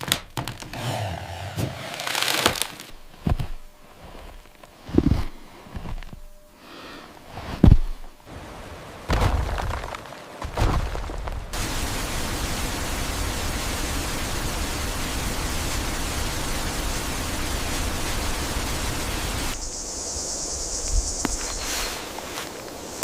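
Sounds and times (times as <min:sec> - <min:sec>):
high hiss: 0:11.4 - 0:23.0
waterfall rushing: 0:11.6 - 0:19.6.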